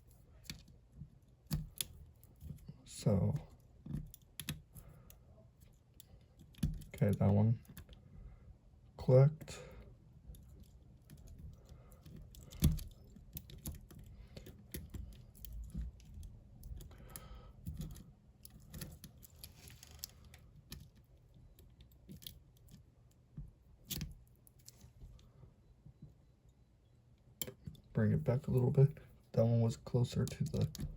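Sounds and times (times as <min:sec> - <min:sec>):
metallic clicks and scrapes in lock: 0:10.3 - 0:17.0, 0:17.6 - 0:22.8, 0:23.8 - 0:24.9.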